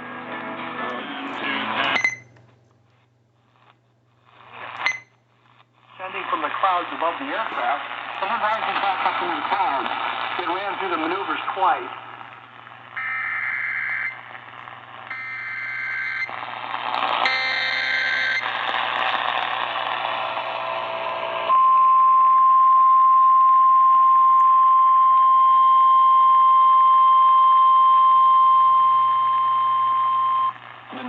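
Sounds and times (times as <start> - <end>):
radio static: 3.5 - 21.8, 29.7 - 31.0
steady alarm tone: 13.0 - 14.2, 15.1 - 16.3, 17.2 - 18.4.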